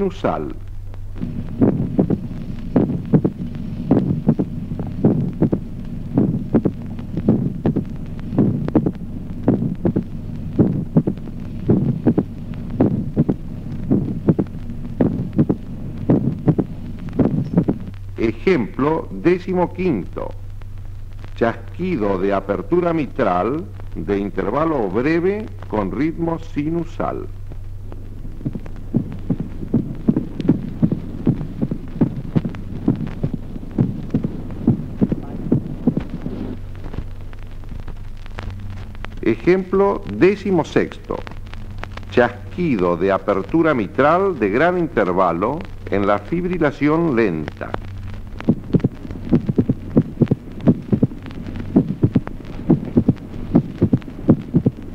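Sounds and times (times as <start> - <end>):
heartbeat sounds: 0.0 - 23.0, 25.4 - 54.9
steady low hum: 0.0 - 54.9.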